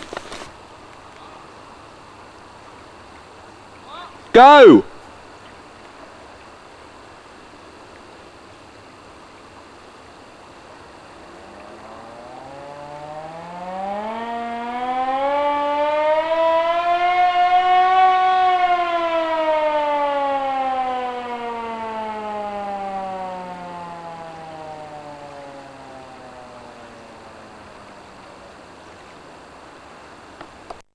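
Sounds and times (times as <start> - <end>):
hand-cranked air raid siren wailing: 11.8 - 27.8.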